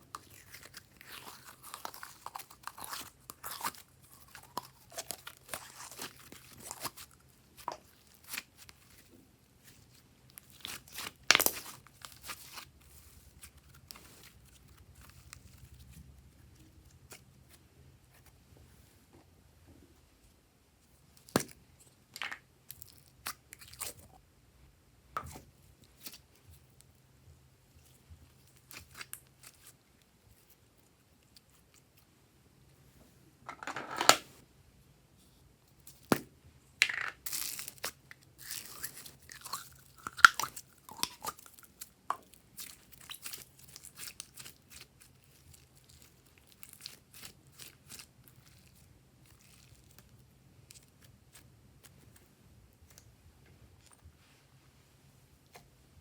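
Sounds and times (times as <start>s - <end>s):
slime clicking and crackling: 37.3s - 50.1s.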